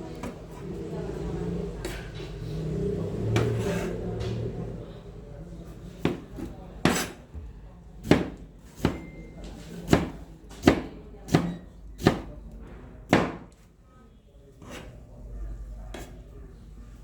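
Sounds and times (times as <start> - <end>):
knife chopping vegetables on board: 6.0 - 7.2, 8.0 - 9.1, 9.7 - 12.4, 13.1 - 13.6.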